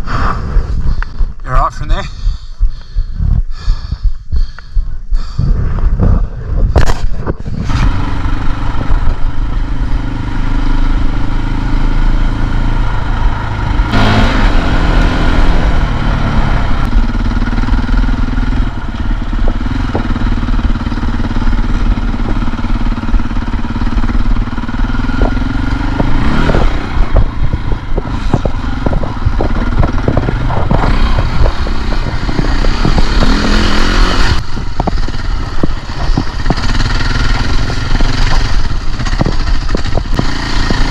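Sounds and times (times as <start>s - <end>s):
dirt bike engine: 0.0s - 40.9s
knocks and clatter: 34.3s - 40.9s.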